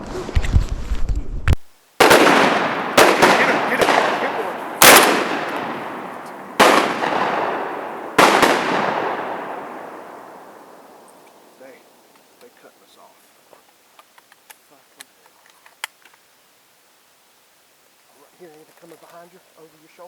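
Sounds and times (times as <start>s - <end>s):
shotgun shots echoing: 2.0s - 11.5s.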